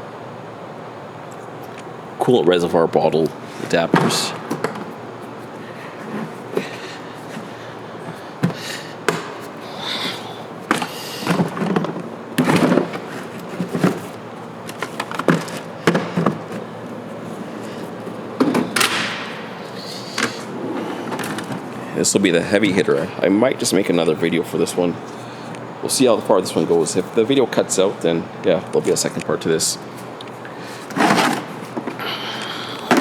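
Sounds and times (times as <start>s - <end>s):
hand tools clicking and clunking: 3.2s - 22.0s, 30.0s - 33.0s
plastic case being handled: 3.6s - 17.2s, 30.8s - 32.0s.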